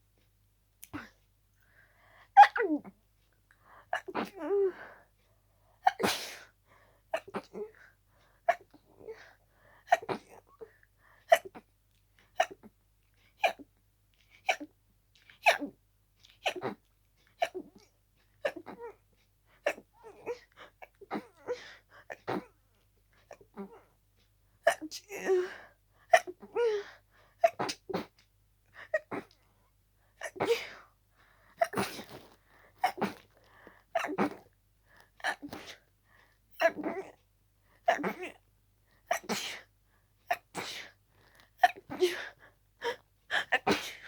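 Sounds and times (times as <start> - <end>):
person sneezing: 5.8 - 6.5, 31.6 - 33.2, 43.3 - 44.0.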